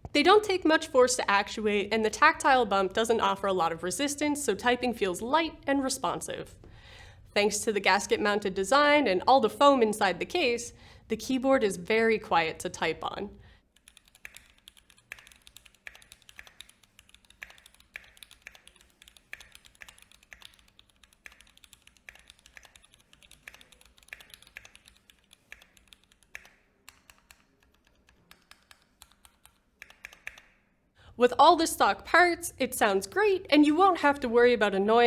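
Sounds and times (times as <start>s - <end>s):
quiet mechanical keyboard typing: 13.0s - 30.6s.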